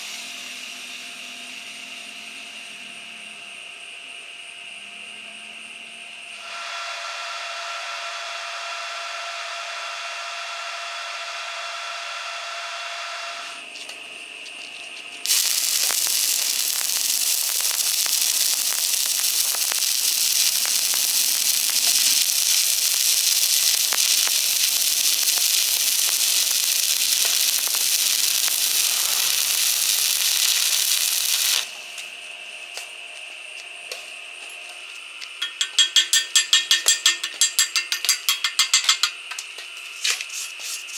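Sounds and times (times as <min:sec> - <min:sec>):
arc welding crackling hiss: 0:00.0 - 0:02.5, 0:15.2 - 0:32.8, 0:35.2 - 0:40.9.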